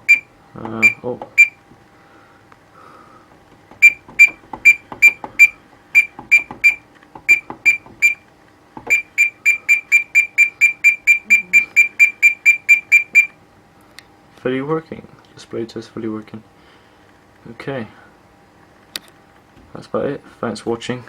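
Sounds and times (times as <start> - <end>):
alarm panel buzzer beeping: 0.0 - 1.6, 3.8 - 8.2, 8.9 - 13.4.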